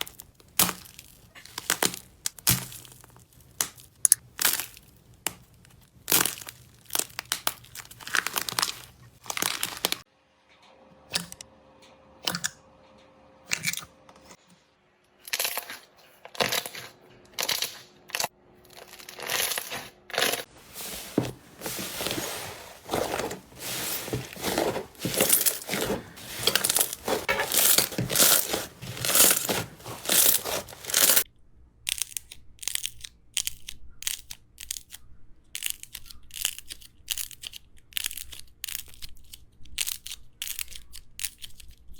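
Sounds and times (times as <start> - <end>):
slime crackling and tearing: 0.0 - 10.0.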